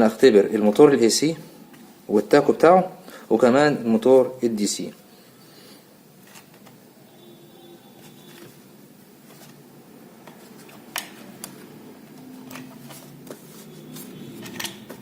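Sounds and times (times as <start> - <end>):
hard parts clicking and clattering: 12.2 - 13.2, 13.9 - 15.0.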